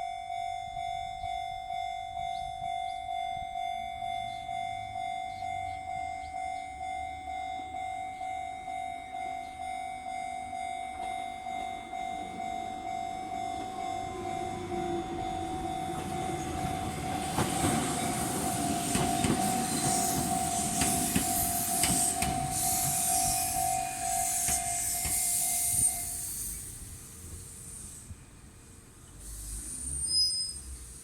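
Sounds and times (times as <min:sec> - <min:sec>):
level crossing alarm: 0:00.0 - 0:26.5
loud rushing rail noise: 0:00.0 - 0:31.0
train wheels knocking over rail joints: 0:16.0 - 0:23.6.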